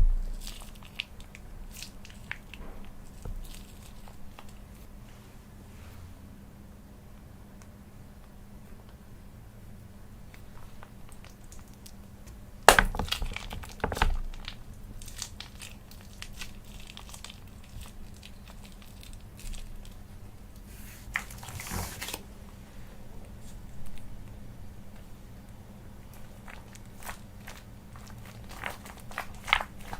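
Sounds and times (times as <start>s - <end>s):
sharp knock: 0.0s - 0.4s
crinkling: 0.0s - 4.9s, 10.3s - 22.3s, 23.2s - 29.9s.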